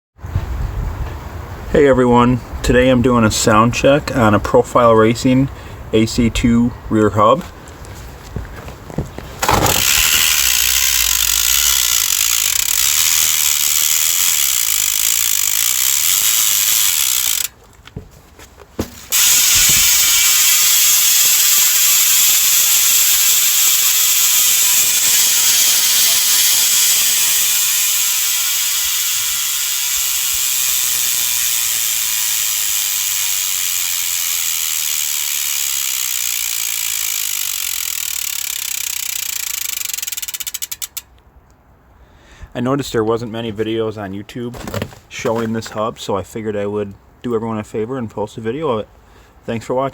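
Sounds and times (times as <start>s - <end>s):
bicycle hub ratcheting buzz: 9.4s - 17.6s, 19.0s - 41.2s.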